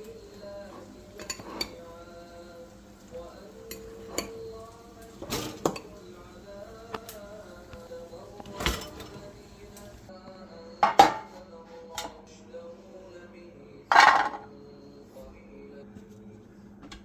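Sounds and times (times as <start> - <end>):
dishes and cutlery clinking: 0.6 - 2.0, 3.6 - 4.5, 5.1 - 6.1, 8.4 - 9.4, 10.8 - 12.2, 13.9 - 14.5.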